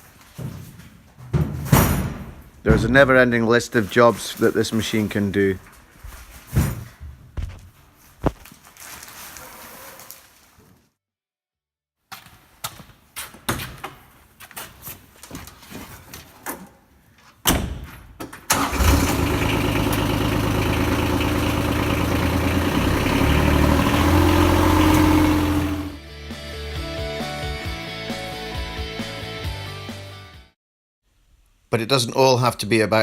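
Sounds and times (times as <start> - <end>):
diesel engine running: 18.5 - 26.0.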